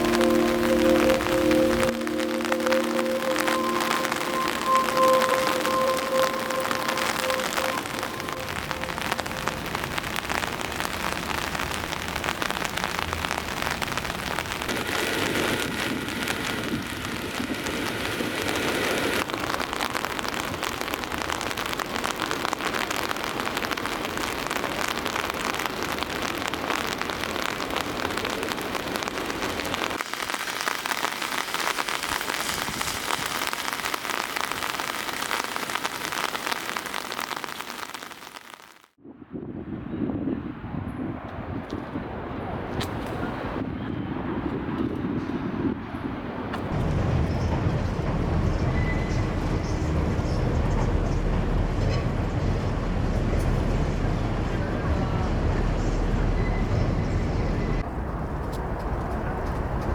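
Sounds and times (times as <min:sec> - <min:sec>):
rain pattering on surfaces: 0:00.0 - 0:39.0, 0:46.5 - 0:59.9
low rumble: 0:46.7 - 0:59.9.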